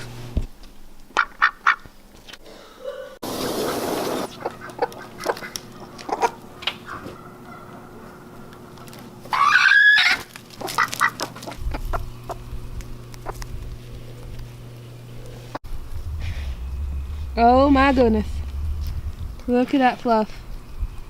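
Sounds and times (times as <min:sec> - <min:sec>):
chickens clucking: 0:04.2 - 0:08.3
chicken squawk: 0:09.3 - 0:11.9
faint steady hum: 0:11.6 - 0:21.0
rush of noise: 0:15.7 - 0:21.0.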